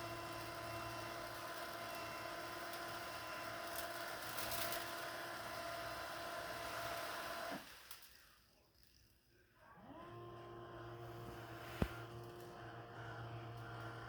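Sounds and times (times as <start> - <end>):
motor humming and whining: 0.0 - 7.7, 9.8 - 14.0.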